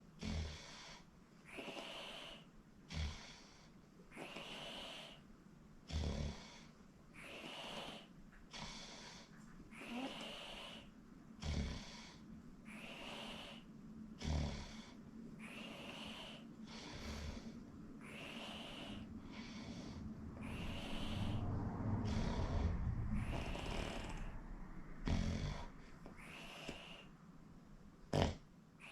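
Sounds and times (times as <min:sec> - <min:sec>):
person snoring loudly: 0:14.2 - 0:14.9, 0:20.4 - 0:21.4, 0:22.0 - 0:24.4, 0:25.0 - 0:27.1, 0:28.1 - 0:28.9
low rumble: 0:18.8 - 0:26.2.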